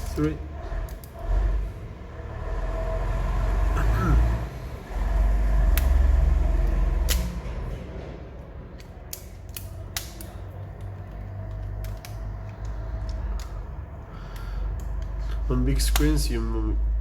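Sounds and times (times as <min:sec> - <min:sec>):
heavy low rumble: 0:09.7 - 0:17.0.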